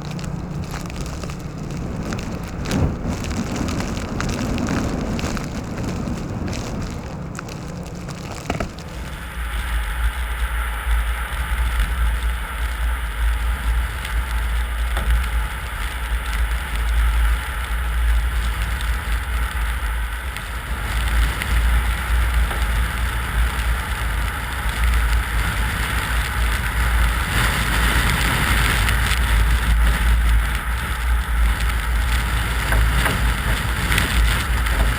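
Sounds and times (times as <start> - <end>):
vehicle engine and road rumble: 0.0 - 34.9.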